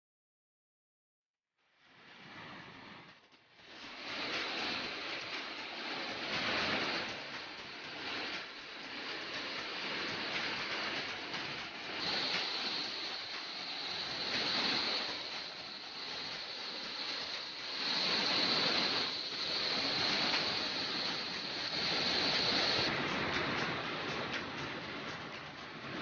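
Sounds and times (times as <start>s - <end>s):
steady rushing noise: 1.8s - 26.0s
thin high steady tone: 11.7s - 22.9s.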